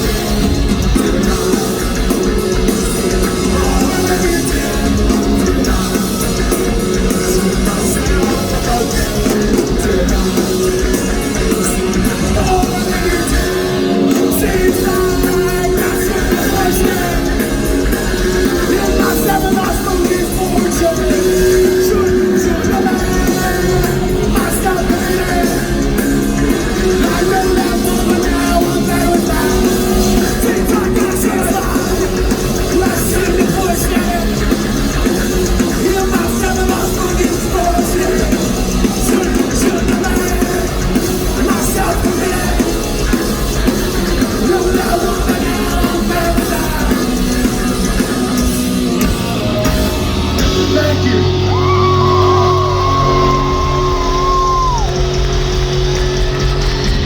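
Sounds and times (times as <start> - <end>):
live punk rock band: 0.0 - 57.0
shouted vocals: 49.7 - 55.2.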